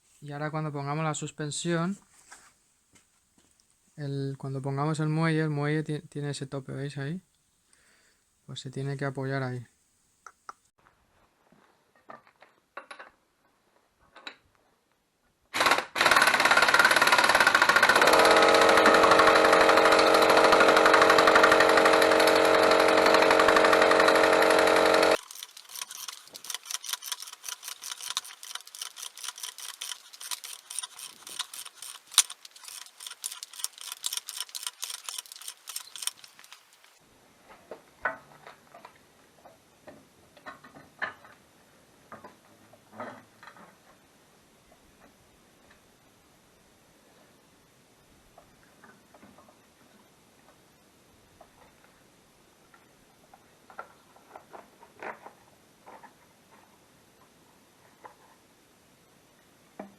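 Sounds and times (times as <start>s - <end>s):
pneumatic impact wrench running: 15.6s - 37.0s.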